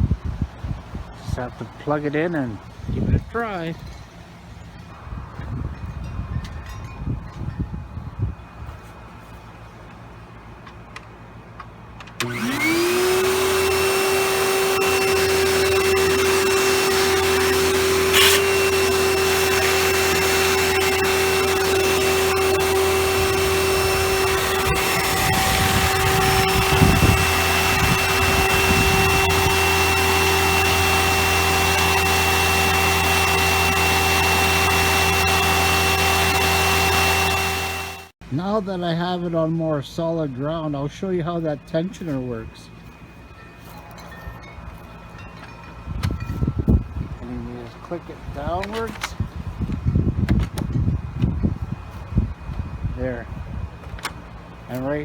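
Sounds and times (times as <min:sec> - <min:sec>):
vacuum cleaner motor whine: 0:12.2 - 0:38.2
uneven low rumbling: 0:14.1 - 0:38.1.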